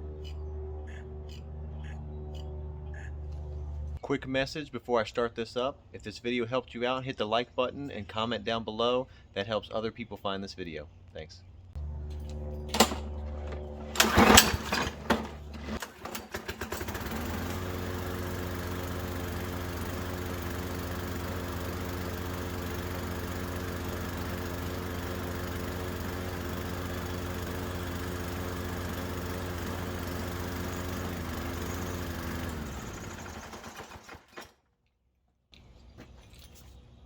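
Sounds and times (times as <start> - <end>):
lawn mower engine running: 11.8 - 34.5.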